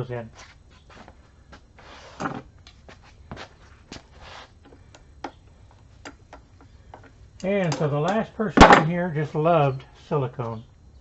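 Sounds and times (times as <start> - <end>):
metal tools clicking and tapping: 6.0 - 8.3.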